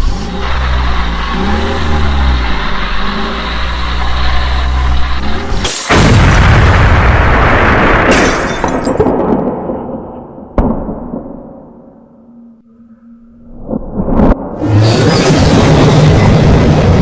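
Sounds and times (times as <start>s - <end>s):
vehicle engine running: 0.0s - 5.7s
loud crash-like boom: 5.8s - 11.5s.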